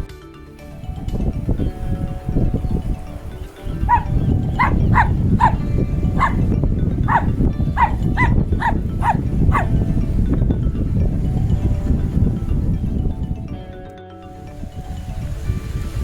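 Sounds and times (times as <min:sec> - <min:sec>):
short falling animal calls: 0:03.9 - 0:05.6, 0:06.2 - 0:06.4, 0:07.1 - 0:09.7.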